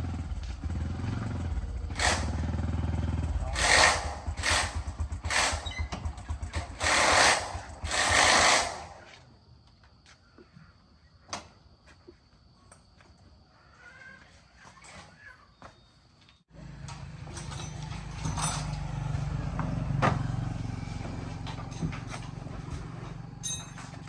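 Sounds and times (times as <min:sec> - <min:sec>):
small engine throbbing: 0:00.0 - 0:09.1, 0:16.5 - 0:23.9
hissing bursts: 0:03.5 - 0:05.7, 0:06.5 - 0:09.0.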